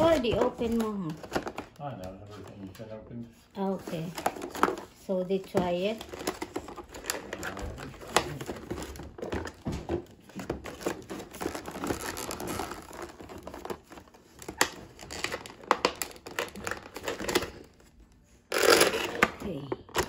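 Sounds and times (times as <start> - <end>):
packaging crinkling and rustling: 0.0 - 20.0.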